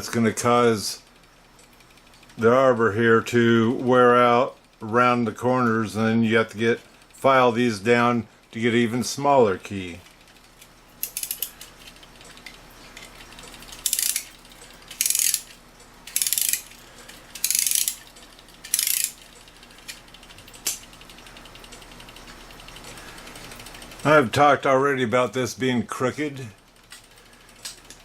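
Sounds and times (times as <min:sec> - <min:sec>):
rapid ratchet clicking: 0:10.1 - 0:24.2.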